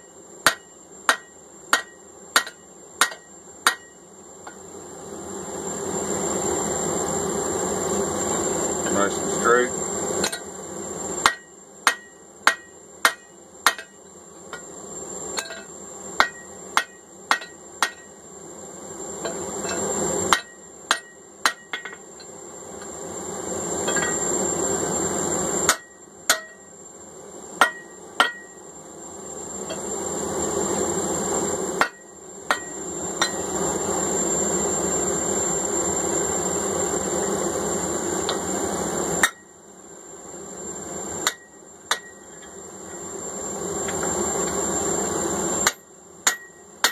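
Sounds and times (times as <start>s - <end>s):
hammer striking steel on anvil: 0.4s - 4.6s, 10.2s - 10.5s, 11.2s - 14.6s, 15.4s - 18.2s, 19.2s - 22.0s, 23.8s - 24.3s, 25.7s - 26.7s, 27.6s - 28.6s, 31.8s - 33.4s, 39.2s - 39.5s, 41.2s - 42.6s, 45.6s - 46.9s.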